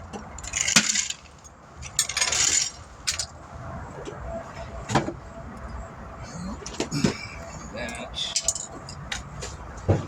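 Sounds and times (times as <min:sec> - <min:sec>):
metal tools clinking and scraping: 0:00.1 - 0:03.4, 0:06.7 - 0:09.5.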